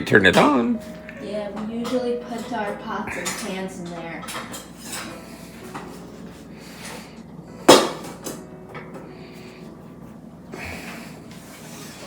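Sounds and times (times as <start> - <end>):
metal pots and pans clanking: 1.8 - 6.0.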